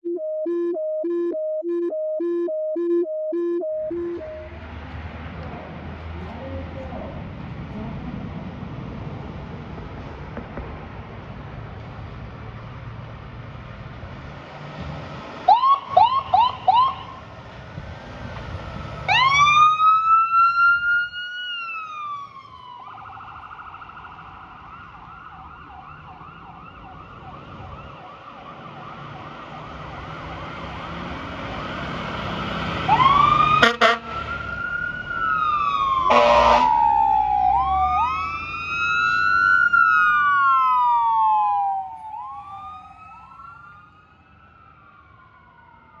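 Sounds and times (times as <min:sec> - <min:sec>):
fire engine sirens: 0:00.0 - 0:05.0, 0:15.0 - 0:46.0
air horn blasts: 0:33.6 - 0:34.3, 0:36.1 - 0:36.8.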